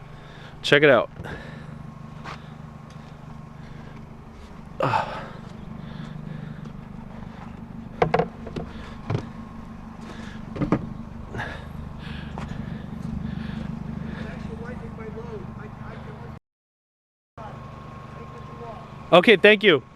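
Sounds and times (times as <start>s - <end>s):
car engine idling: 0.0s - 16.4s, 17.4s - 19.9s
junk knocking and clunking: 0.3s - 15.6s.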